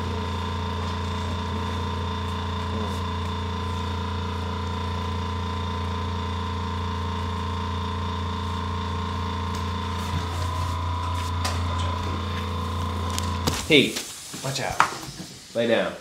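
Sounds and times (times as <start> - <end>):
machine hum: 0.0 - 14.5.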